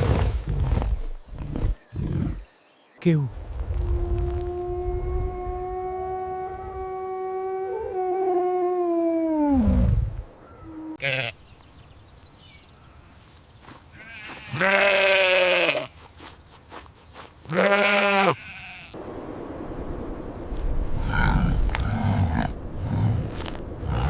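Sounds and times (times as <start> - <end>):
livestock bleating: 11.0 - 11.4, 13.9 - 15.9, 17.5 - 19.0.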